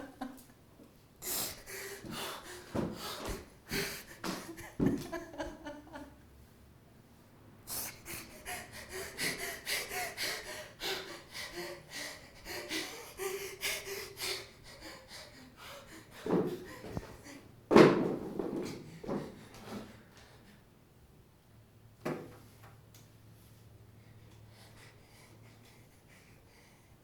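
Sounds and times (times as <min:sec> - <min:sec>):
man breathing heavily: 0:01.2 - 0:05.1, 0:07.7 - 0:17.7, 0:23.9 - 0:27.0.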